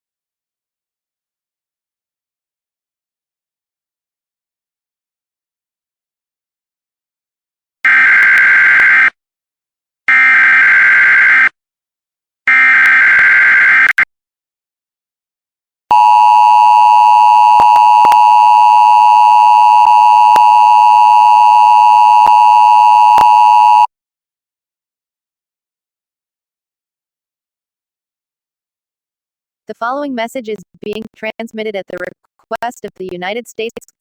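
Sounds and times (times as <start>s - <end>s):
two-tone attention signal: 15.9s - 23.9s.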